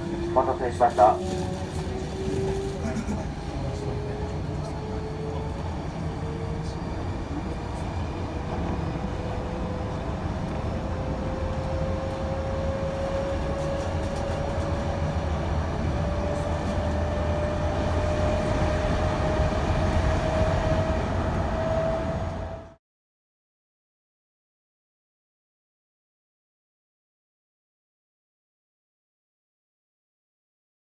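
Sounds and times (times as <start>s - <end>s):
train running gear rumble: 0.0s - 22.8s.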